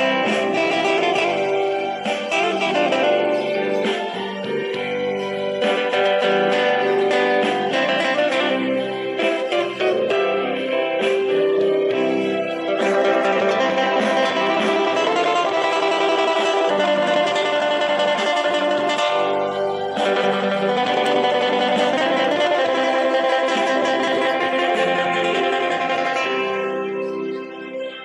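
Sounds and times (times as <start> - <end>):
plucked guitar music: 0.0 - 28.0.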